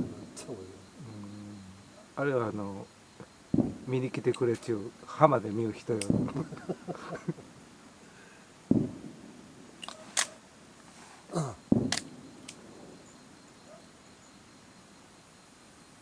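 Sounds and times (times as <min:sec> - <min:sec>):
firework booms: 0:00.0 - 0:00.9, 0:03.5 - 0:04.3, 0:05.7 - 0:06.9, 0:08.7 - 0:09.8, 0:11.4 - 0:13.5
sharp firework cracks: 0:03.5 - 0:04.0, 0:06.0 - 0:06.6, 0:08.7 - 0:10.4, 0:11.7 - 0:12.9.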